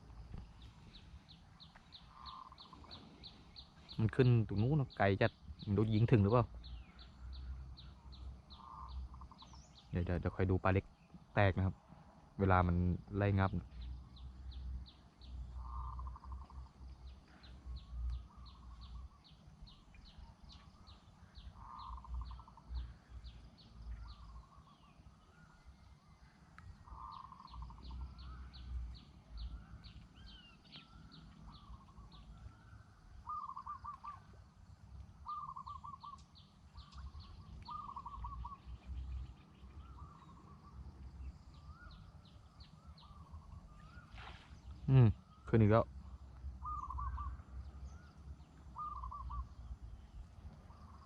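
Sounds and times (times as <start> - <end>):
rapid high bird chirps: 0.0 - 10.8, 15.0 - 25.1, 26.8 - 34.3, 35.2 - 45.9, 46.6 - 49.8
birds trilling: 0.0 - 11.8, 12.4 - 51.0.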